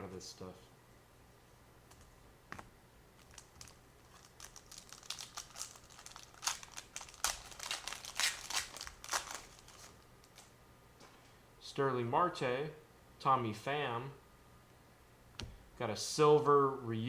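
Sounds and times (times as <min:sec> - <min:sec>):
wrapper crackling and rustling: 0:03.2 - 0:10.5.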